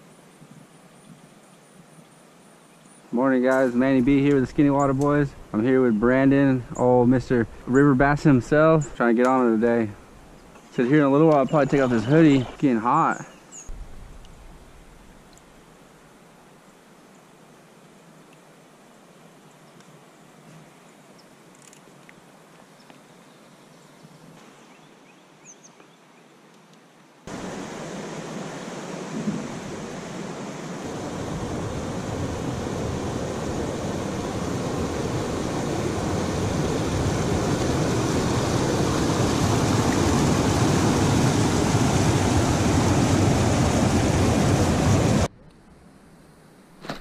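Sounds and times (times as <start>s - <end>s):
steady rushing noise: 13.7s - 15.7s, 27.3s - 47.0s.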